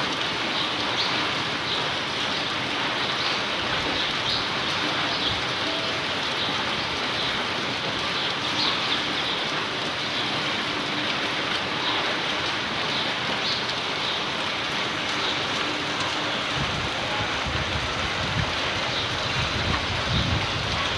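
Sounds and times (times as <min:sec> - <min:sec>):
heavy rain falling: 0:00.0 - 0:20.9.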